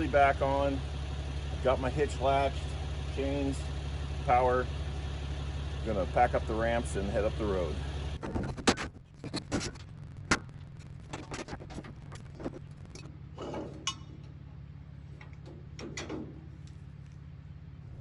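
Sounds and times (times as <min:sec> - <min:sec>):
vehicle engine idling: 0:00.0 - 0:18.0
metal ramps clanking and rattling: 0:08.2 - 0:14.5, 0:15.1 - 0:16.7.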